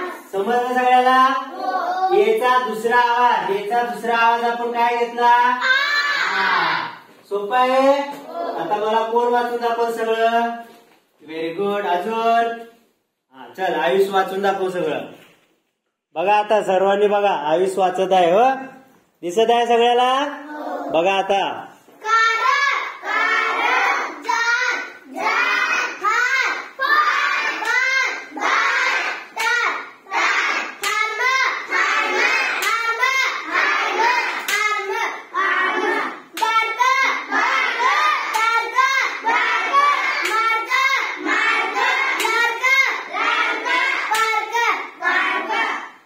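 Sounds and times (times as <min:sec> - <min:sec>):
child reading words aloud: 0:01.4 - 0:02.4, 0:05.6 - 0:07.1, 0:08.1 - 0:08.7, 0:20.4 - 0:21.0, 0:21.7 - 0:46.0.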